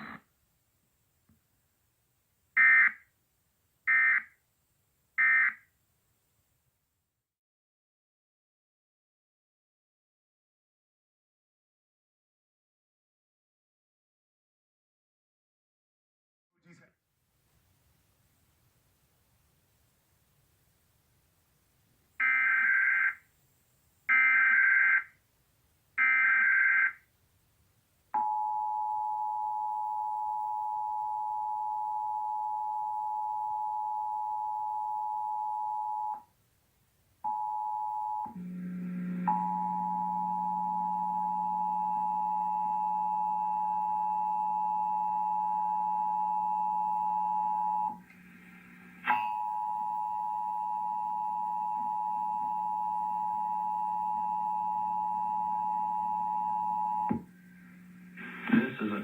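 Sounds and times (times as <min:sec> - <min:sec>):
steady two-tone alert signal: 0:37.3 - 0:59.0
low hum: 0:38.3 - 0:43.8, 0:47.9 - 0:51.3, 0:54.0 - 0:59.0.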